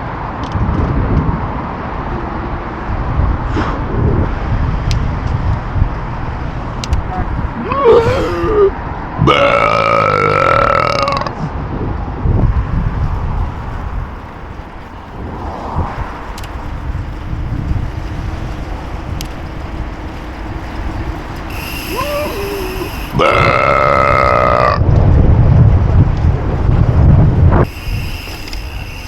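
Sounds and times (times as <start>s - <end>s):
person burping: 7.6s - 11.4s, 21.9s - 24.8s.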